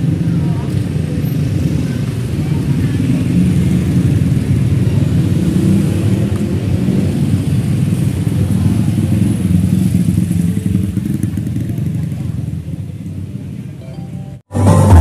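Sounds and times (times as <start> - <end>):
loud bass rumble from sound system: 14.5 - 15.0.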